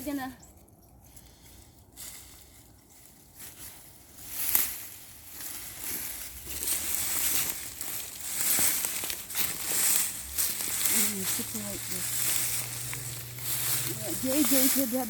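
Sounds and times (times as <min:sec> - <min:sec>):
mulch rustling and crunching: 0:04.2 - 0:15.0.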